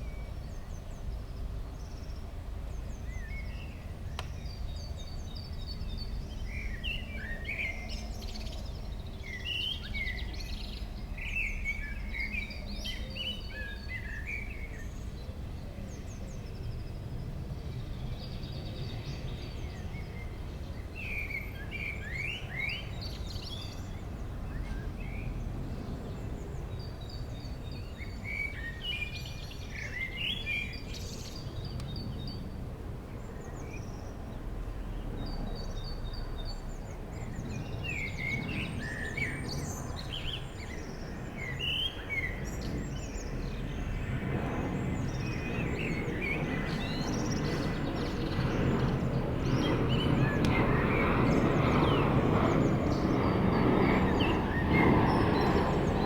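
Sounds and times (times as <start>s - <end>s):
songbirds chirping: 0.0s - 56.0s
jet airliner rumble: 14.2s - 56.0s.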